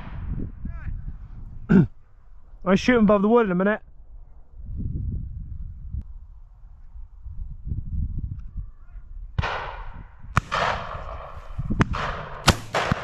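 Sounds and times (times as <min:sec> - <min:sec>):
shotgun shots: 0:09.4 - 0:13.0.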